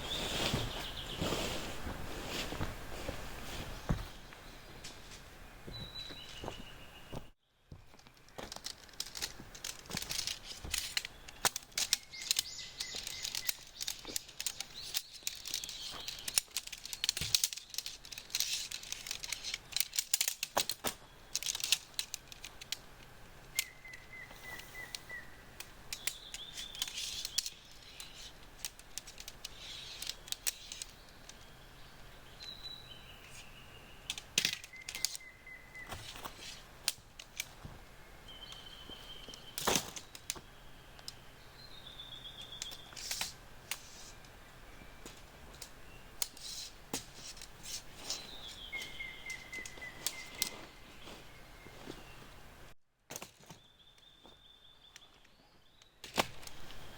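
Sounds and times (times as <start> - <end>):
small birds chirping and trilling: 0.0 - 2.4, 3.5 - 20.4, 21.0 - 52.4
outdoor ambience: 0.0 - 56.9
sharp clicks and crackles: 8.0 - 25.0, 25.6 - 31.5, 34.1 - 35.3.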